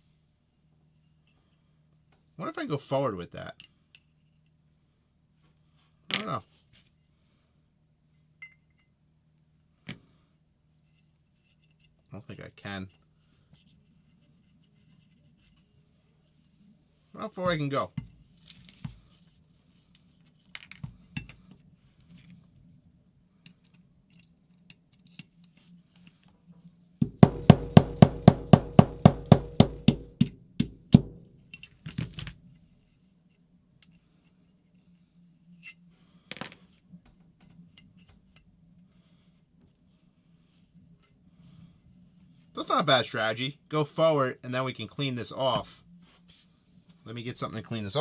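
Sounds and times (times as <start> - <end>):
rapid metallic tapping: 27.1 - 31.2.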